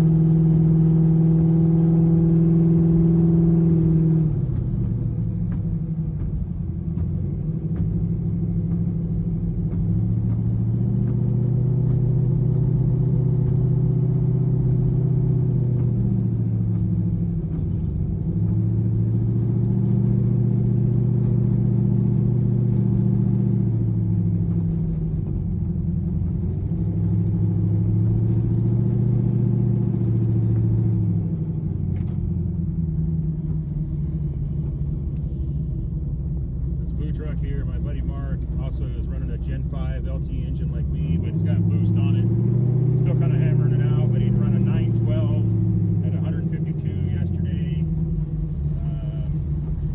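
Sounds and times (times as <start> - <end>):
car engine revving: 0.0 - 49.9.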